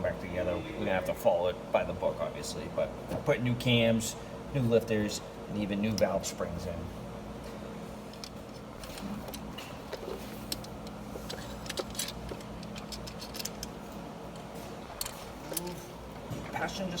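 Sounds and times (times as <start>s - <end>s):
steady low hum: 0.0s - 17.0s
metallic clicks of tools: 10.5s - 13.8s.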